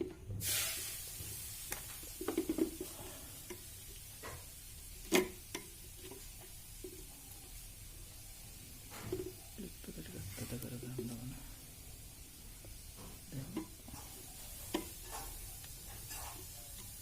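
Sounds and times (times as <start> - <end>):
brief hiss: 0.3 - 2.2.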